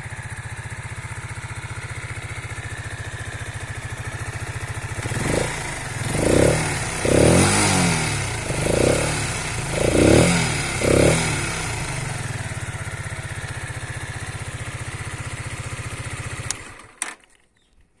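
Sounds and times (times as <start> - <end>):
motorcycle engine idling and revving: 0.0 - 17.6
engine switch-off click: 16.4 - 17.3.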